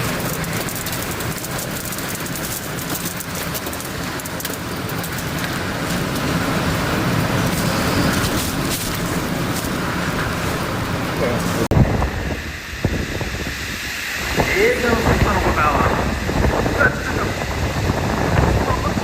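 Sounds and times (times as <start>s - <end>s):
crackles: 0.0s - 12.2s, 12.8s - 19.0s
vehicles on wet road: 0.0s - 19.0s
low rumble: 4.8s - 19.0s.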